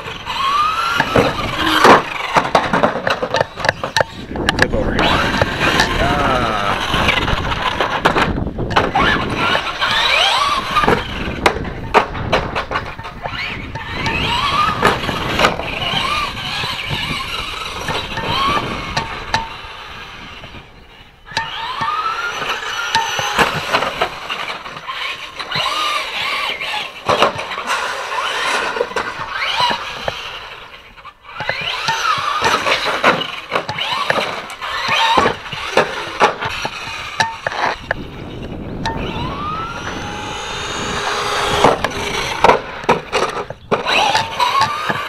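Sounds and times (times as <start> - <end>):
electric motor whining: 0.0 - 45.0
knocks and clicks: 1.0 - 6.1.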